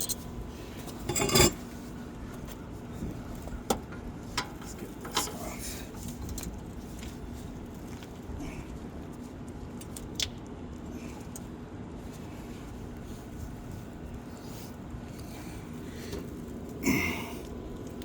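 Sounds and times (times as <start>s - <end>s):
metal hand tools clinking: 1.1s - 1.6s.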